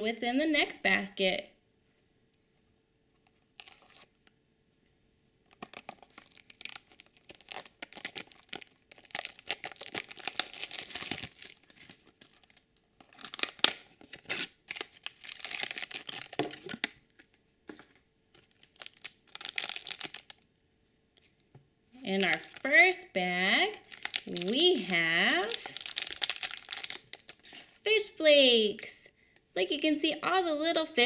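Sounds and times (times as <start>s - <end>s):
plastic packaging tearing and crinkling: 3.5s - 4.3s, 5.5s - 17.3s, 18.4s - 20.4s, 22.1s - 22.7s, 23.8s - 27.8s.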